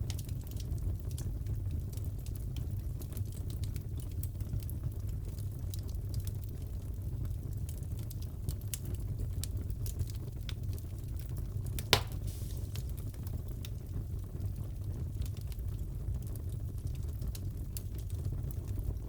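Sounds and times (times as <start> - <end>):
wood fire crackling: 0.0 - 19.0
loud sharp pop: 11.8 - 12.9.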